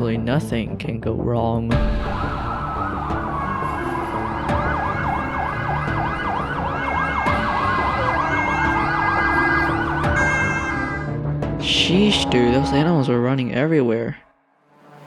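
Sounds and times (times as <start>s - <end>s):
low rumble: 1.7s - 7.6s
emergency vehicle sirens: 1.9s - 13.1s.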